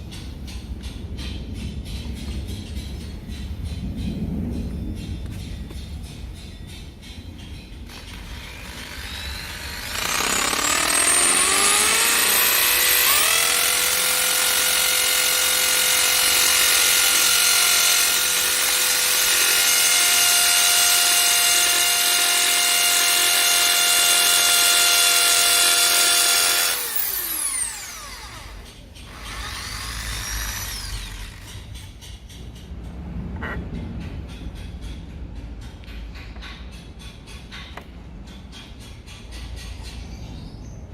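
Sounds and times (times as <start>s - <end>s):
electric drill motor whining: 7.9s - 31.4s.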